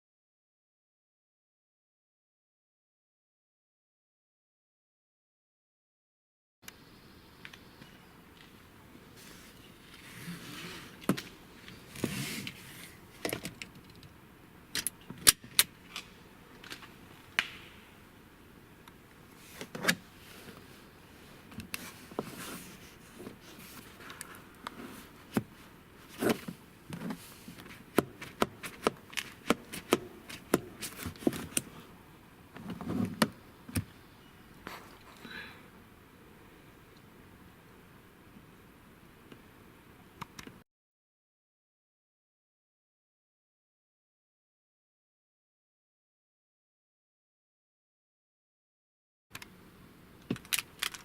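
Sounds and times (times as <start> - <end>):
soft rustling: 19.3 - 31.9
small hard parts clicking and rattling: 50.3 - 51.0.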